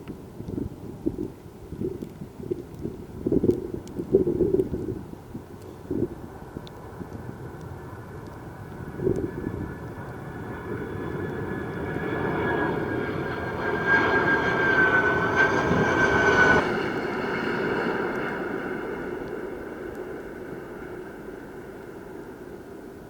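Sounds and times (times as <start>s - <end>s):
jet engines passing: 6.2s - 23.0s.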